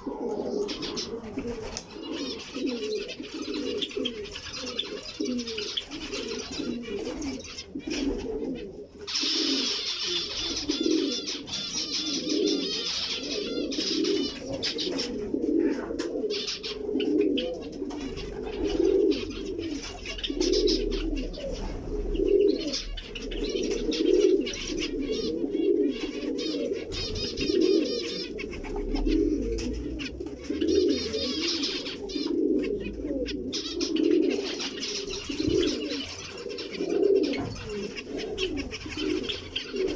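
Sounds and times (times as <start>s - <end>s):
finches chirping: 0.0s - 39.9s
pigeons cooing: 0.0s - 39.9s.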